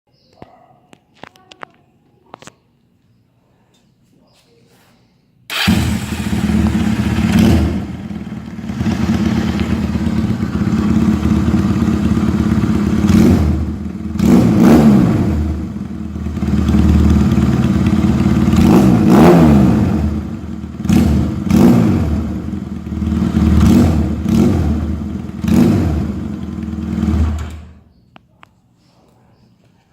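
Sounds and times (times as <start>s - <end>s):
motorcycle engine revving: 5.5s - 27.8s.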